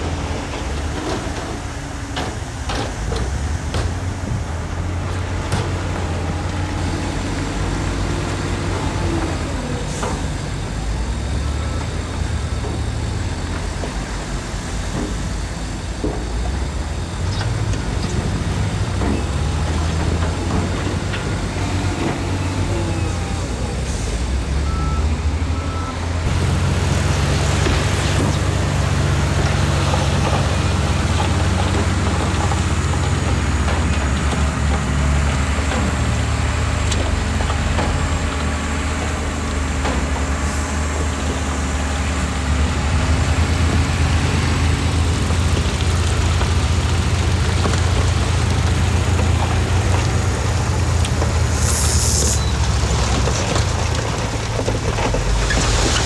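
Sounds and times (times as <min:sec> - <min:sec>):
diesel engine rumbling: 0:00.0 - 0:56.0
air release hiss: 0:51.5 - 0:52.4.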